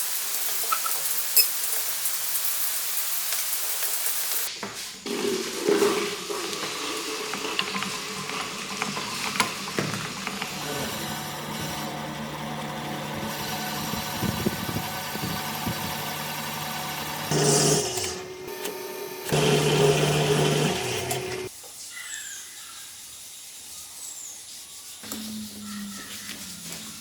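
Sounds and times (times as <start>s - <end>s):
power tool motor humming: 8.8s - 21.5s.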